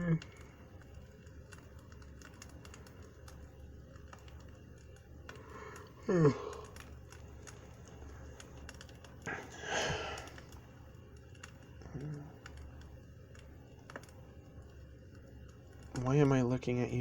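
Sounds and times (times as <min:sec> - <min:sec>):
campfire crackling: 0:00.0 - 0:17.0
man sighing: 0:06.0 - 0:06.8, 0:09.3 - 0:10.4.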